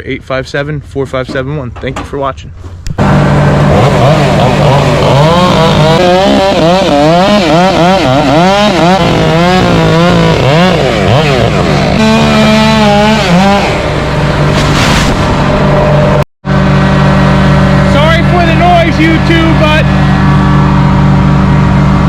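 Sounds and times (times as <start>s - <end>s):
stump grinder engine running: 3.0s - 14.6s, 15.6s - 22.0s
high whine: 10.8s - 22.0s.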